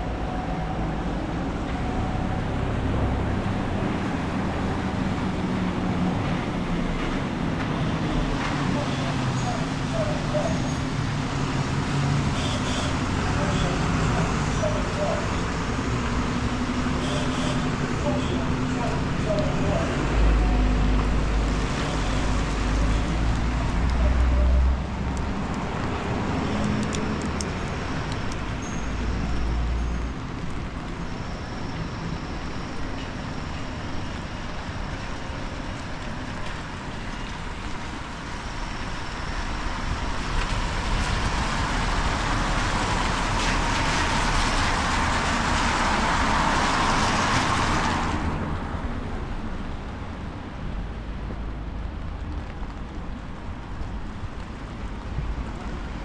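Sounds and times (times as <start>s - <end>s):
traffic on a wet road: 0.0s - 56.0s.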